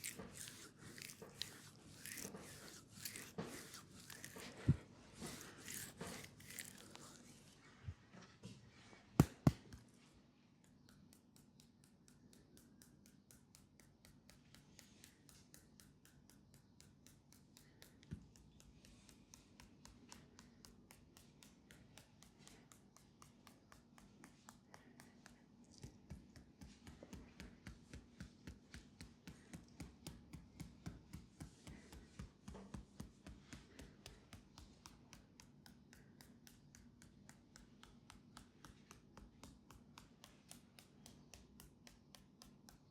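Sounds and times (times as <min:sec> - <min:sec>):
hands patting on a leg: 0:09.2 - 0:10.0, 0:10.9 - 0:42.9.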